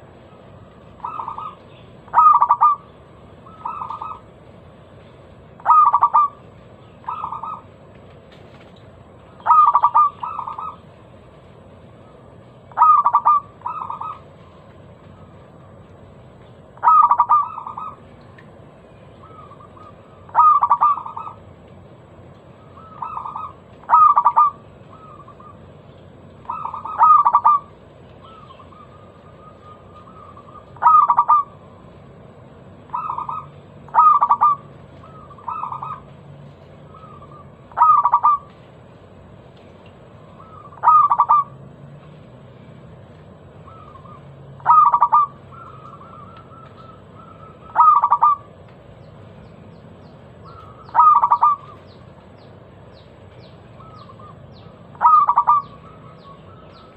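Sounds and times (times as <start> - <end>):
dove cooing: 0.9 - 4.4, 5.6 - 7.8, 9.3 - 10.9, 12.7 - 15.5, 16.8 - 18.2, 19.2 - 21.5, 22.6 - 25.8, 26.4 - 31.9, 32.9 - 36.1, 36.8 - 38.6, 40.3 - 41.7, 43.6 - 48.7, 50.4 - 52.1, 53.7 - 56.9.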